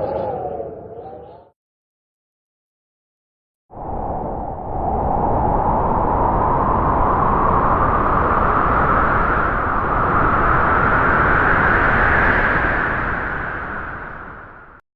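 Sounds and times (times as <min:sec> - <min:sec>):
strong whistling wind: 0:03.7 - 0:14.8.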